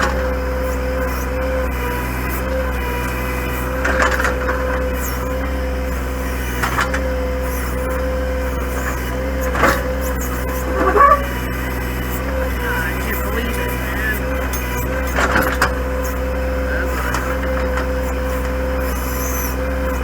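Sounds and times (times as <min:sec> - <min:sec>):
tractor diesel engine running: 0:00.0 - 0:20.0
backhoe bucket crunching soil: 0:08.7 - 0:20.0.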